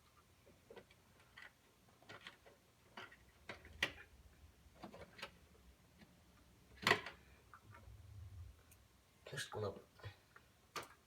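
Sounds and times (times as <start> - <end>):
plastic clicks and scrapes: 0.7 - 4.1.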